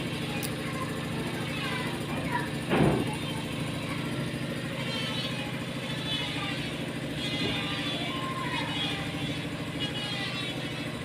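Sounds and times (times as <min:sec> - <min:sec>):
small engine running: 0:00.0 - 0:11.0.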